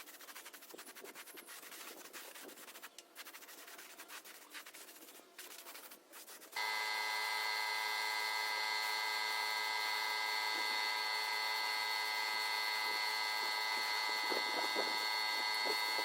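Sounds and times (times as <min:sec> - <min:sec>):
power tool high whine: 0:06.6 - 0:16.0.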